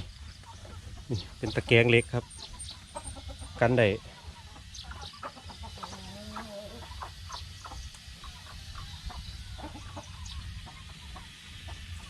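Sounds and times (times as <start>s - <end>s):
chickens clucking: 0.0s - 12.0s
wavering chicken call: 4.2s - 11.8s.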